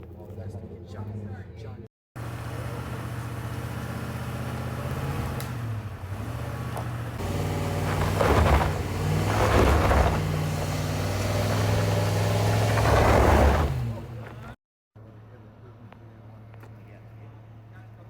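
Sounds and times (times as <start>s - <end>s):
vehicle low hum: 2.2s - 14.6s
rushes of noise: 7.2s - 14.6s.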